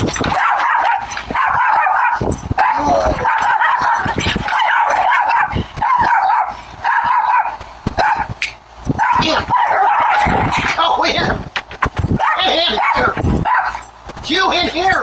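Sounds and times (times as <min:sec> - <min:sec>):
dogs barking and yipping: 0:00.0 - 0:10.8, 0:12.1 - 0:14.0.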